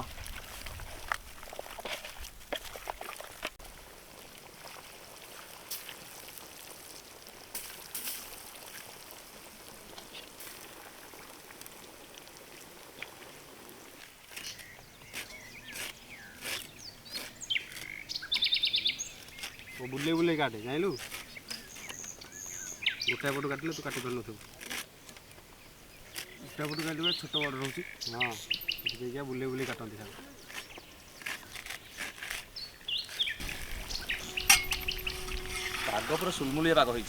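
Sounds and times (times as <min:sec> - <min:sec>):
small birds chirping: 0:14.3 - 0:24.3, 0:25.6 - 0:37.0.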